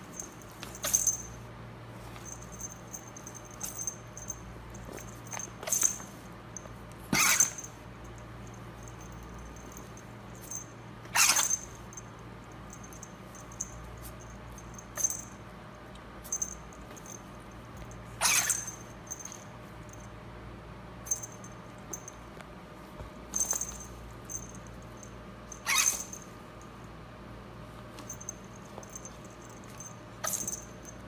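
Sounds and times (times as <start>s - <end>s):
ferret sneezing: 7.1s - 7.6s.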